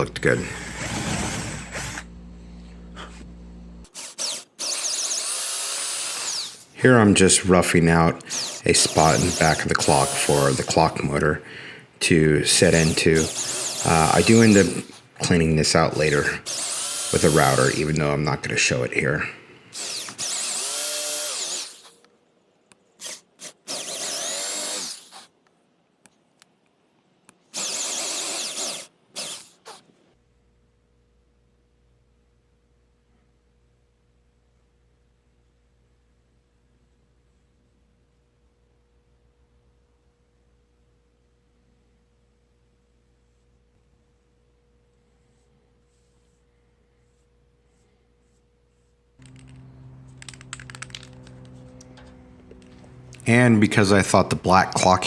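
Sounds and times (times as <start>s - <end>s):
steady low hum: 0.0s - 3.9s, 30.2s - 55.0s
power drill boring into wood: 0.4s - 2.1s, 3.9s - 6.7s, 8.2s - 10.9s, 12.6s - 15.0s, 15.9s - 17.9s, 19.8s - 22.0s, 23.0s - 25.3s, 27.6s - 29.8s
sharp clicks: 49.2s - 53.2s.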